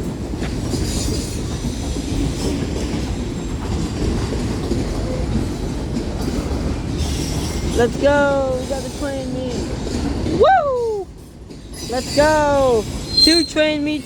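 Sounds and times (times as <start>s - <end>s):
steel wheels rumbling on rail: 0.0s - 14.0s
faint high wheel squeal: 11.7s - 13.7s.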